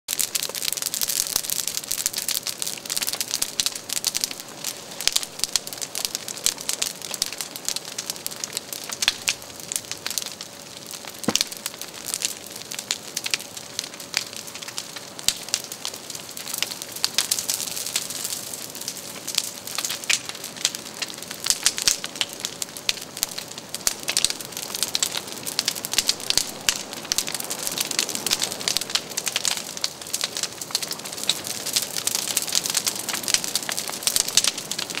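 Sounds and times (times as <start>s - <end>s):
fire crackling and popping: 0.1s - 35.0s
hiss of flame: 0.3s - 20.5s.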